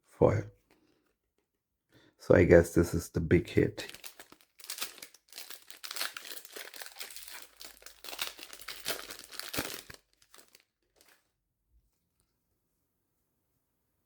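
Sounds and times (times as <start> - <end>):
wrapper crinkling and tearing: 3.8 - 11.2.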